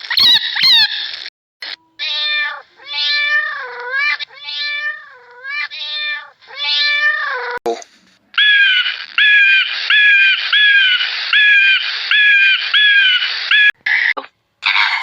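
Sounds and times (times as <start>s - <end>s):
cat meowing: 1.6s - 7.6s.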